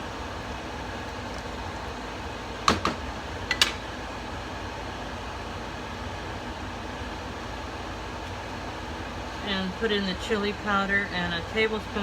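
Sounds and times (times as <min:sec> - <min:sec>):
fan whirring: 0:00.0 - 0:12.0.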